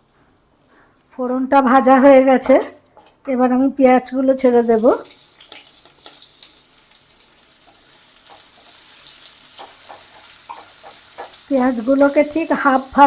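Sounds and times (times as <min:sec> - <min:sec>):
hot oil sizzling and crackling: 0:04.6 - 0:13.0.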